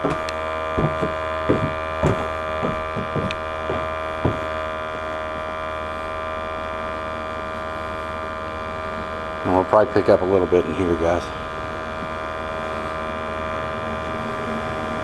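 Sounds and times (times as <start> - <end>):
steady hum: 0.0 - 4.5
footsteps on wooden stairs: 0.0 - 4.6.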